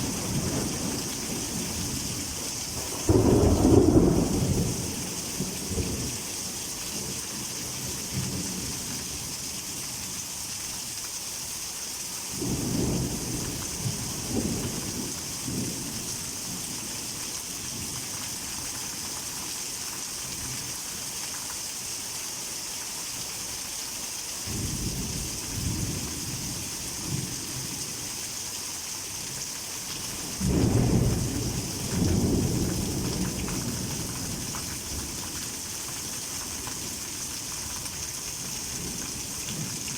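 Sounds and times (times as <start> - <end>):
thunder rumbling: 0.0 - 6.1, 30.3 - 35.2
heavy rain hissing: 0.0 - 39.9.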